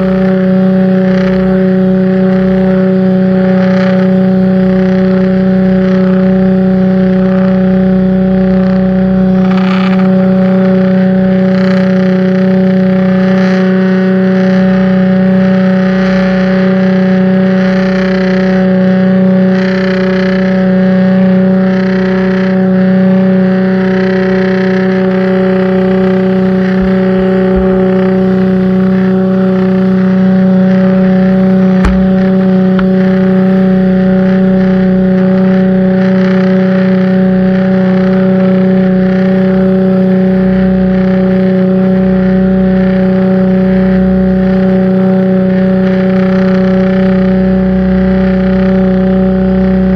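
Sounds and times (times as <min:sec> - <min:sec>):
pressure washer drone and spray: 0:00.0 - 0:49.9
sharp click: 0:09.4 - 0:10.7, 0:31.7 - 0:33.1.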